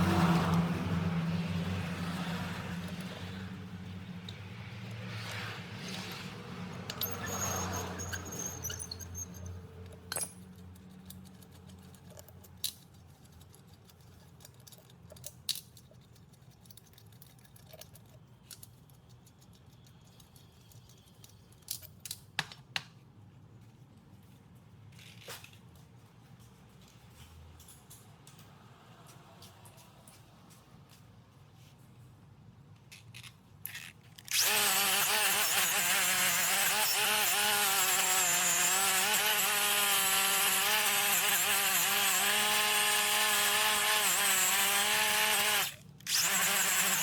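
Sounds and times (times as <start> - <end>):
metallic clicks of tools: 6.8 - 22.7, 32.8 - 47.0.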